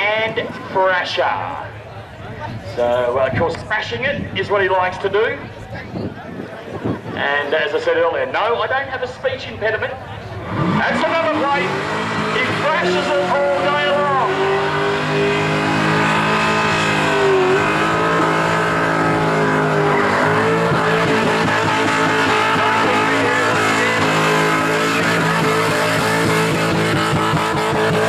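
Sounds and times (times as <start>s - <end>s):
car engine revving high: 10.3s - 28.0s
tyres squealing: 10.8s - 28.0s.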